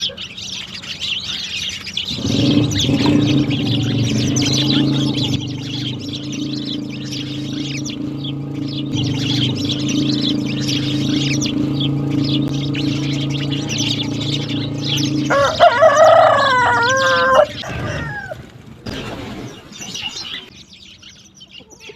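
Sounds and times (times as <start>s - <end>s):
sparrows chirping: 0.0s - 21.9s
steady low hum: 2.1s - 19.6s.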